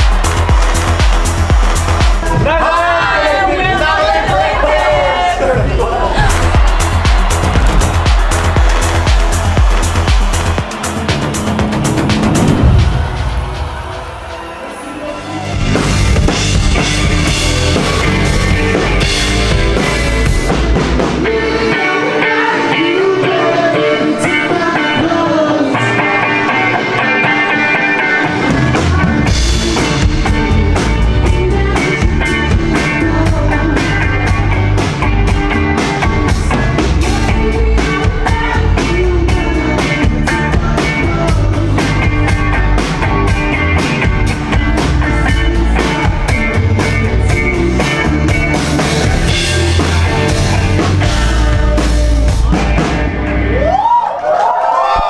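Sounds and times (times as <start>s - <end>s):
bass: 0.0s - 14.2s, 15.1s - 55.0s
drum kit: 0.0s - 22.0s, 26.3s - 53.8s
rock band music: 0.0s - 53.8s
person singing: 17.8s - 53.8s.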